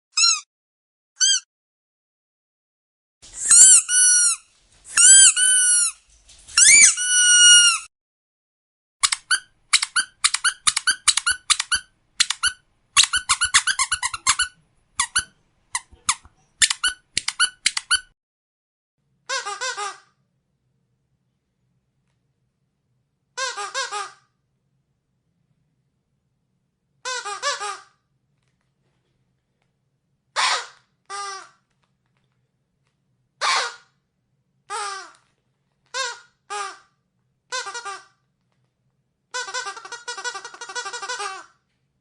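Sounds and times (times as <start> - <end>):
rubber dog toy squeaking: 0.1 - 0.5, 1.2 - 1.5, 3.4 - 4.4, 5.0 - 6.0, 6.6 - 7.9, 9.0 - 18.1, 19.3 - 20.1, 23.4 - 24.2, 27.0 - 28.0, 30.4 - 31.6, 33.4 - 33.9, 34.7 - 35.2, 35.9 - 36.9, 37.5 - 38.2, 39.3 - 41.6.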